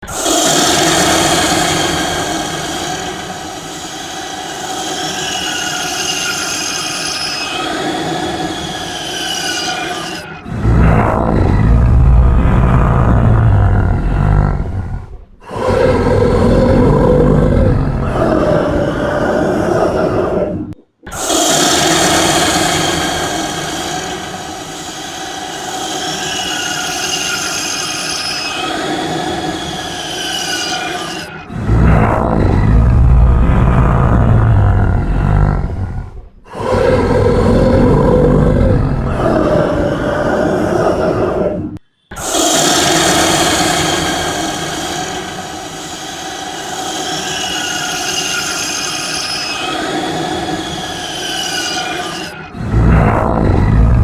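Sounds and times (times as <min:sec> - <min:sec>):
high-pitched multi-tone squealing: 0:00.1 - 0:10.4, 0:21.1 - 0:31.5, 0:42.5 - 0:52.5.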